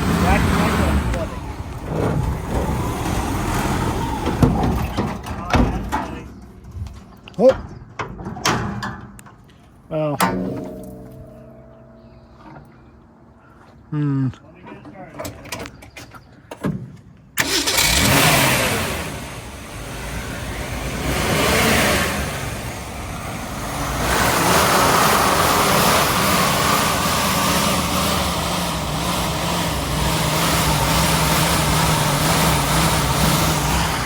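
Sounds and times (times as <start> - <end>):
car engine starting and revving: 0.0 - 5.4, 17.4 - 34.0.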